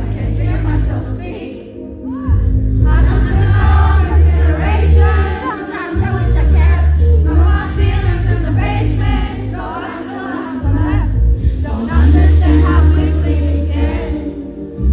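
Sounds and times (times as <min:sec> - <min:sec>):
woman singing: 0:00.0 - 0:14.7
band with heavy bass: 0:02.3 - 0:09.6, 0:10.7 - 0:14.0.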